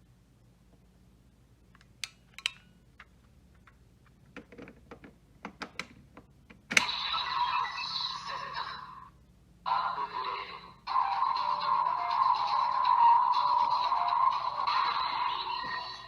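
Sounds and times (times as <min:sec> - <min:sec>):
electronic toy sound: 0:06.8 - 0:09.0, 0:09.7 - 0:16.0.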